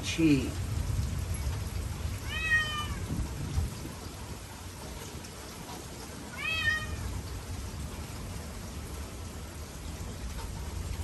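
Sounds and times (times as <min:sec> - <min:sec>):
rain: 0:00.0 - 0:11.0
cat meowing: 0:02.2 - 0:03.1, 0:06.3 - 0:07.1.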